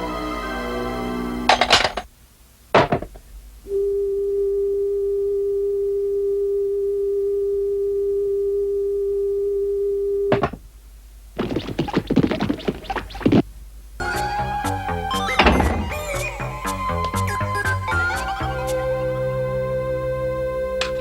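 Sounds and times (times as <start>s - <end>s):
clattering and scraping: 1.5s - 2.1s, 11.4s - 13.4s, 15.1s - 18.8s.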